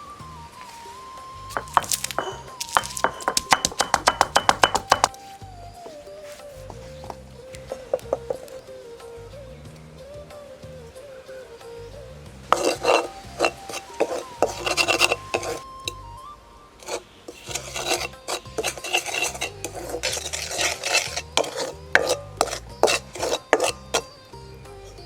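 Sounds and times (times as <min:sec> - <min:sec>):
quiet background music: 0:00.0 - 0:25.0
spoon scraping cooking dish: 0:01.5 - 0:05.1, 0:12.6 - 0:15.6, 0:16.8 - 0:24.1.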